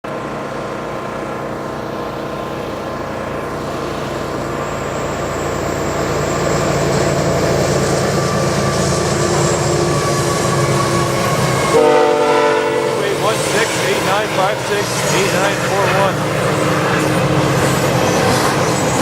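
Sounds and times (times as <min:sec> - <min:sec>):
diesel locomotive engine drone: 0:00.0 - 0:19.0
faint high whine: 0:00.8 - 0:11.8.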